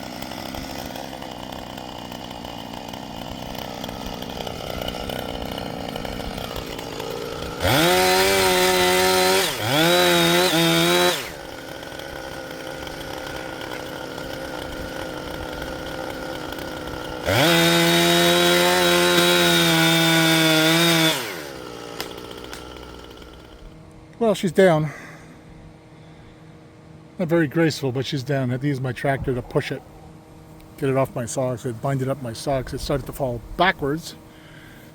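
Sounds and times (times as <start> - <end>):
chainsaw revving: 0.0 - 23.8.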